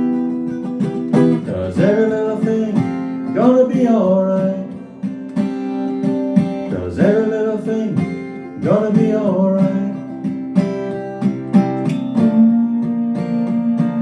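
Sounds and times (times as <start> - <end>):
acoustic guitar strumming: 0.0 - 14.0
person singing long notes: 1.4 - 5.0.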